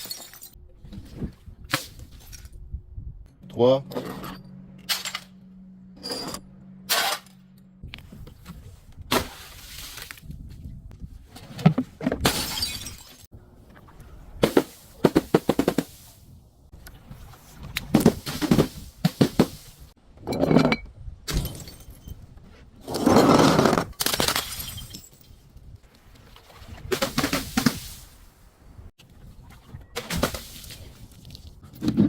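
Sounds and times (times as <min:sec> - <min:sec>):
glass smashing and crunching: 0:00.0 - 0:00.6, 0:12.2 - 0:13.3, 0:24.0 - 0:25.2.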